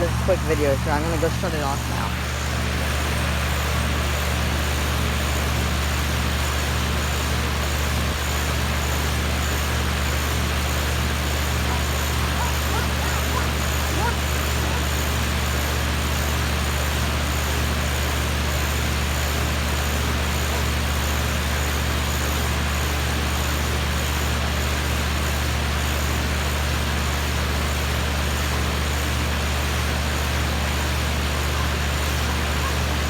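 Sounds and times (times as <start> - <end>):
fan air rushing: 0.0 - 21.9
compressor humming: 0.0 - 33.0.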